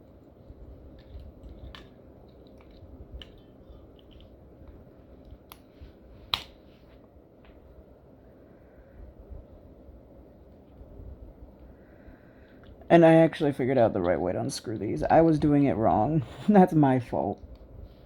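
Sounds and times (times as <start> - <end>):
soft handling noise: 0.0 - 7.8.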